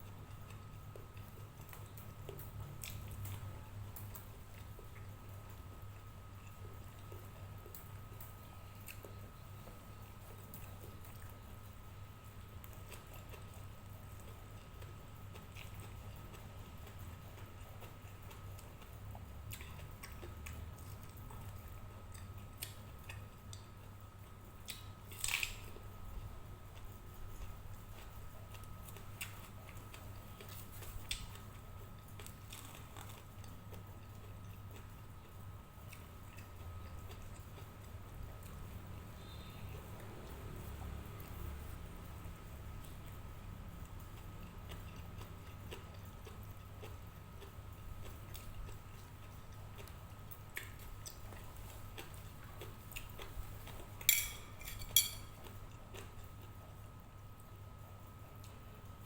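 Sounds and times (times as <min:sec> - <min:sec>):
steady low hum: 0:00.0 - 0:59.0
kitchen utensils clicking: 0:54.1 - 0:55.3.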